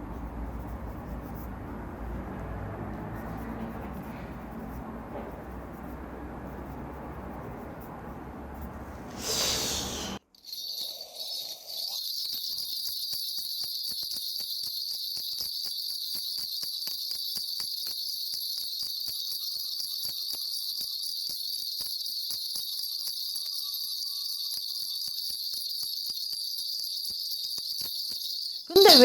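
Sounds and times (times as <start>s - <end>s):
bells jingling: 10.4s - 16.8s, 18.7s - 29.0s.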